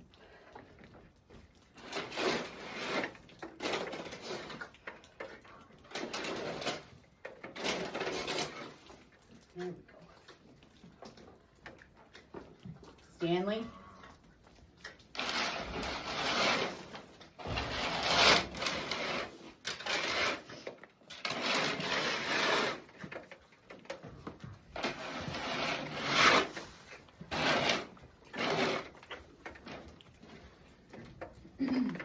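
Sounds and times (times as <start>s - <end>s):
cleaning tool scraping: 15.2s - 20.6s, 21.2s - 22.9s, 24.8s - 28.9s.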